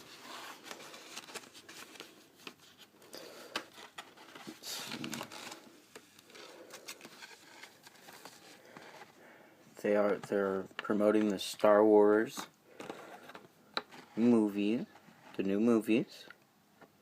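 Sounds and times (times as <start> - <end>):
paper and packaging rustling: 0.0 - 9.2.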